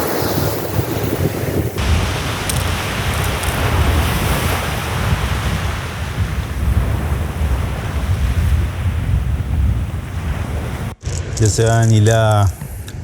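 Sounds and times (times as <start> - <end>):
sea surf washing on beach: 0.0 - 11.0
wind buffeting microphone: 0.0 - 11.7.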